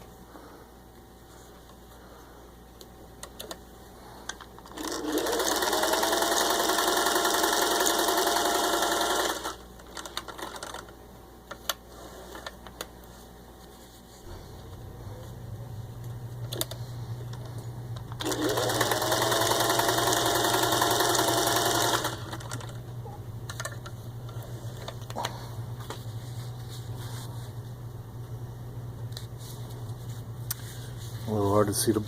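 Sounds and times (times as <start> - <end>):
sewing machine stitching leather: 4.6 - 10.9, 18.1 - 22.8.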